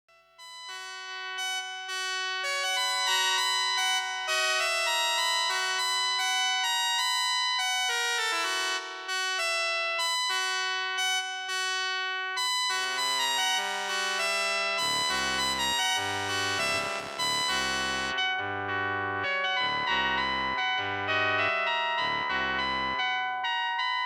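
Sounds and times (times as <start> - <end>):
electronic keyboard melody: 12.7 - 24.0.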